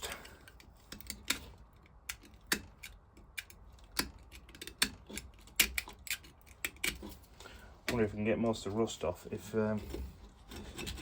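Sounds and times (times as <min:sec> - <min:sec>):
metal tool clicking and scraping: 0:00.0 - 0:07.2.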